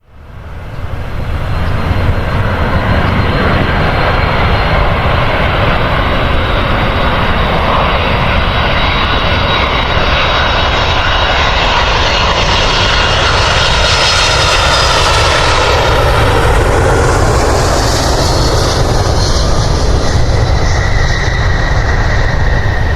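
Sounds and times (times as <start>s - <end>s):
airliner engines running: 0.0s - 22.9s.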